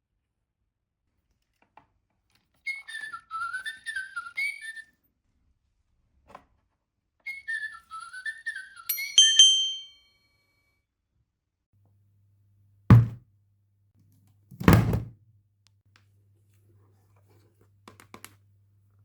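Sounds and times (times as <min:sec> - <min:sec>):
bright ringing chime: 0:08.9 - 0:10.1
dull thumps: 0:12.9 - 0:13.2, 0:14.6 - 0:15.1.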